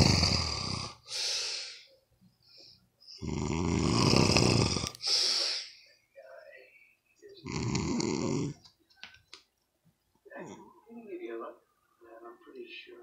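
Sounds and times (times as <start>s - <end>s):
person snoring loudly: 0.0s - 1.2s, 3.2s - 5.2s, 7.4s - 8.6s
breathy breath: 0.0s - 3.3s, 4.1s - 6.0s.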